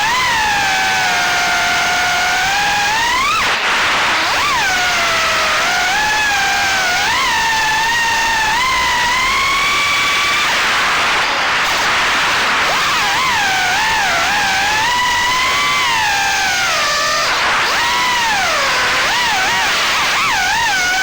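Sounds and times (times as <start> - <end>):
quadcopter motors whining: 0.0 - 21.0.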